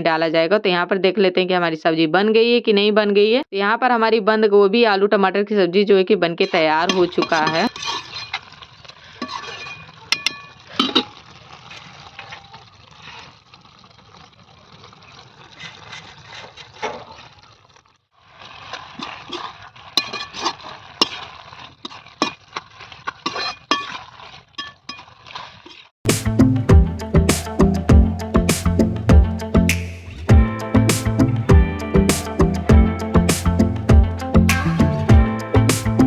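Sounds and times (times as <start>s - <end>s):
metal spoon scraping cooking pot: 6.4s - 11.2s, 18.6s - 25.9s.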